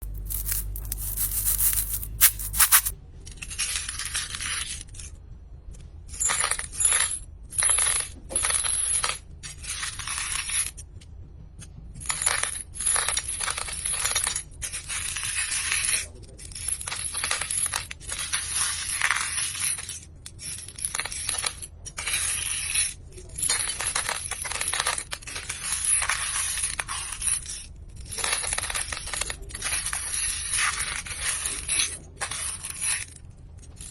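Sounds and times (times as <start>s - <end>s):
coins pouring and clinking: 0.0s - 2.9s.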